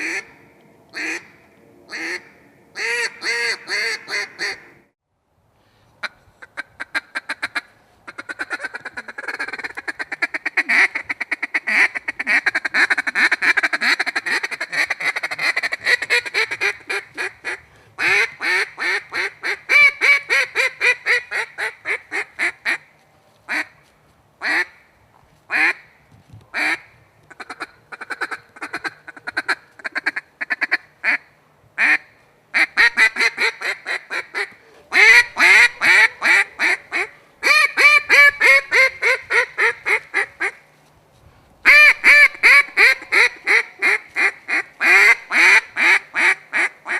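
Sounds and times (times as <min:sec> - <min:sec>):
duck call quacking: 0:00.0 - 0:00.3, 0:01.9 - 0:04.7, 0:06.0 - 0:22.8, 0:31.8 - 0:32.0, 0:32.6 - 0:40.6, 0:41.6 - 0:46.9.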